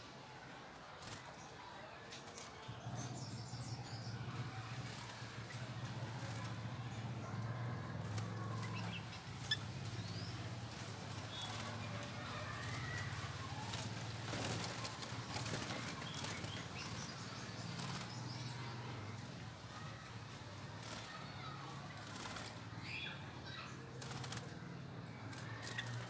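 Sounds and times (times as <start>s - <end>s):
wings flapping and fluttering: 0.9s - 26.0s.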